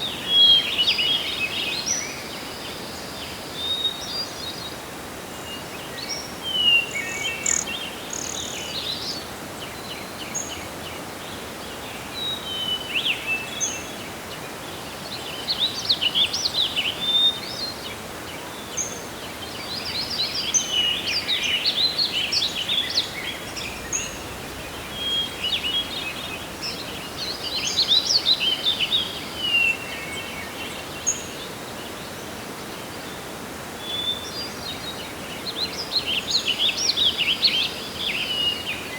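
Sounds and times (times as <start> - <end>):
birds chirping and trilling: 7.1 - 8.6, 19.8 - 31.2
wind hiss: 19.0 - 31.8.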